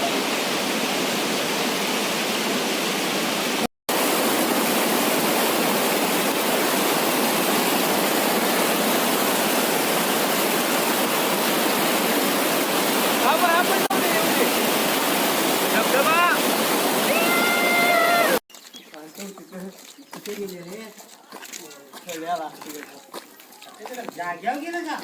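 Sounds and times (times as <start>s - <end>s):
flowing water rushing: 0.0s - 18.4s.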